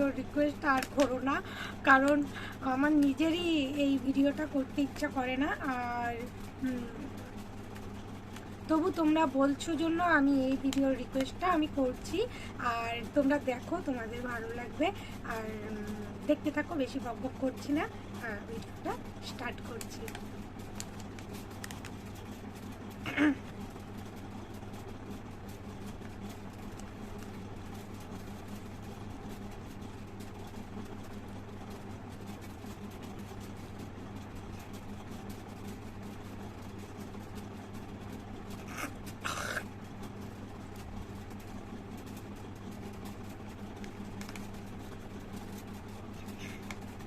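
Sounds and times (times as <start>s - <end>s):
steady low hum: 0.0s - 47.0s
woman spitting and coughing: 23.0s - 23.5s, 38.7s - 39.7s.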